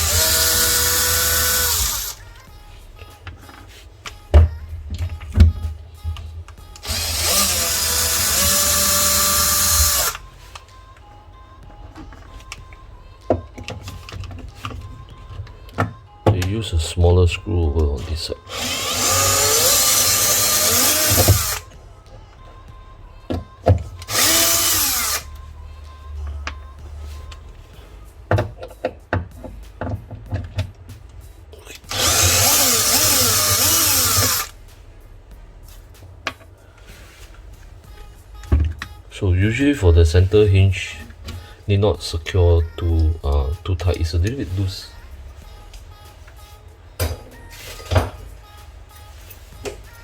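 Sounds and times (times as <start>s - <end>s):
cordless drill driving screw: 0.0s - 2.2s, 6.8s - 10.2s, 18.5s - 21.7s, 24.0s - 25.3s, 31.9s - 34.5s.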